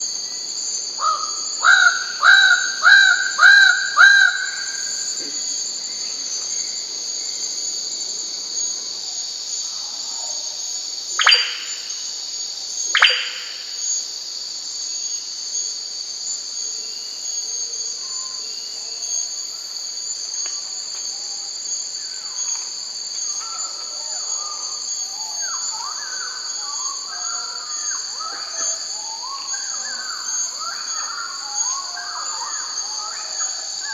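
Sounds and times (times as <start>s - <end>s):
high insect drone: 0.0s - 33.9s
bird calling loud notes: 11.2s - 11.9s, 13.0s - 13.6s
soft chattering bird calls: 11.2s - 11.9s, 13.0s - 13.6s.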